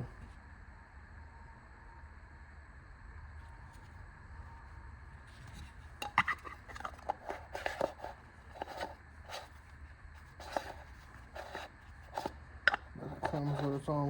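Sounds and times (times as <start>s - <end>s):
low steady hum: 0.0s - 14.0s
plastic lantern clicks and crinkles: 5.5s - 13.9s.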